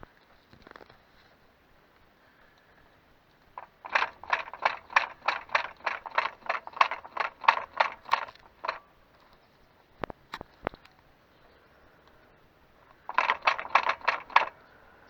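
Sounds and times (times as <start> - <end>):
rapid clattering rattle: 3.6 - 8.9, 12.9 - 14.7.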